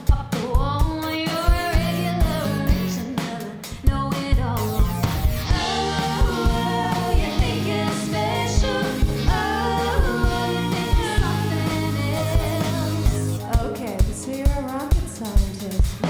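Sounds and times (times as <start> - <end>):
lead singer: 0.0 - 4.7, 5.4 - 16.0
steady drum beat: 0.0 - 16.0
bass guitar: 0.6 - 3.0, 3.8 - 14.1.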